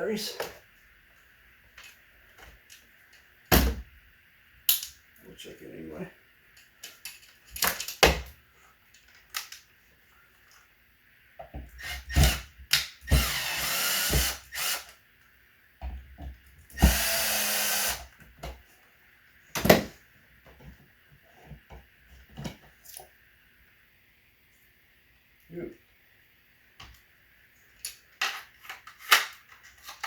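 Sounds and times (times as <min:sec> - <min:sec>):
power drill running: 0:13.1 - 0:14.9, 0:16.8 - 0:18.1.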